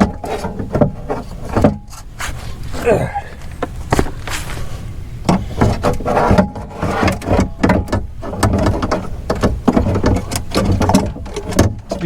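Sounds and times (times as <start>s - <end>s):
window glass and plastic knocking: 5.2s - 12.0s.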